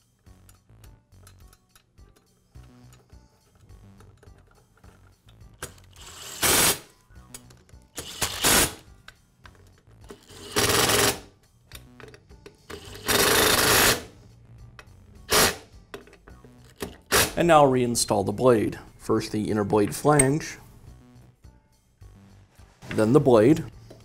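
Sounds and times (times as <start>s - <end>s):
power screwdriver driving screws: 5.6s - 6.9s, 8.0s - 8.8s, 10.1s - 11.3s, 12.7s - 14.1s, 15.3s - 15.6s.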